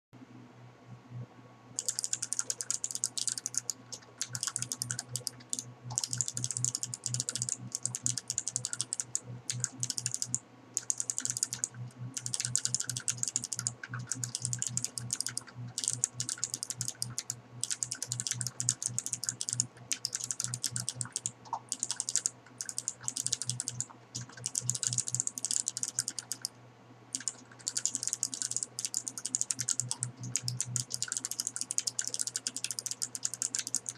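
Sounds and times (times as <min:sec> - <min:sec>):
fast keyboard typing: 0:01.8 - 0:26.5, 0:27.1 - 0:33.9.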